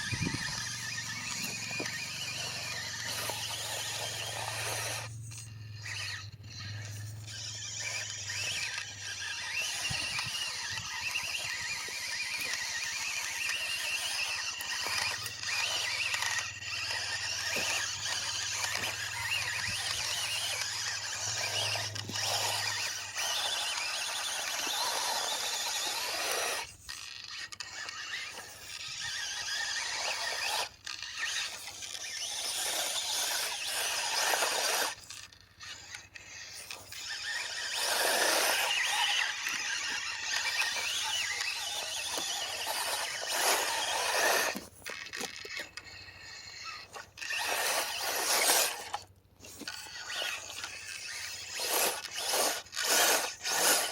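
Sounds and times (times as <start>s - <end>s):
small electric motor whining: 0.0s - 53.9s
tyres scraping in soil: 36.6s - 45.7s.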